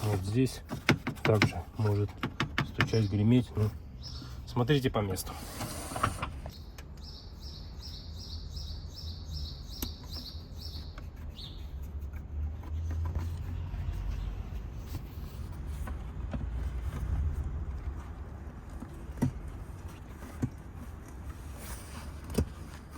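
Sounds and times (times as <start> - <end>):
bird chirping: 2.6 - 4.7, 6.5 - 11.8.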